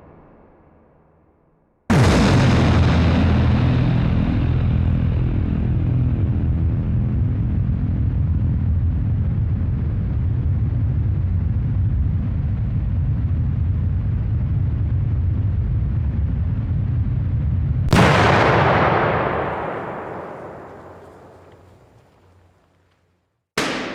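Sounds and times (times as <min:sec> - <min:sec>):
explosion boom: 0:01.9 - 0:04.5, 0:17.9 - 0:22.1
deep rumble: 0:01.9 - 0:22.0.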